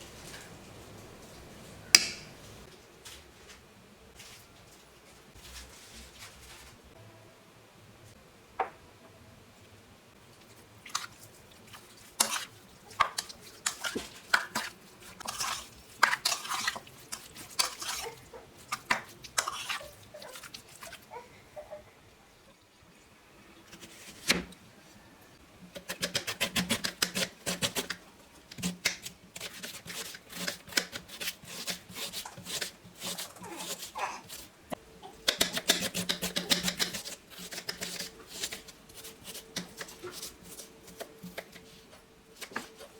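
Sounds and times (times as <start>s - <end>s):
utensils clinking and scraping cookware: 12.2s - 21.0s.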